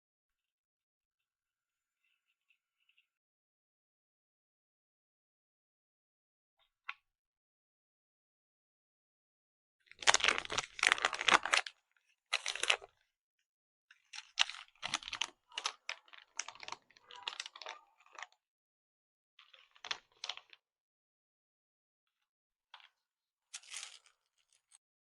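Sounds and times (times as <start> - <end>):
plastic packaging crinkling: 9.9 - 11.7, 12.3 - 12.9, 14.2 - 18.3, 23.6 - 24.8.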